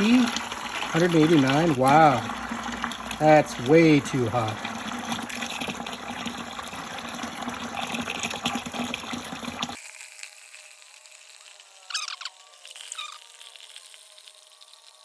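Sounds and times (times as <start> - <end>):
water gushing into a container: 0.0 - 15.0
brief squeak: 11.9 - 12.3, 12.9 - 13.2.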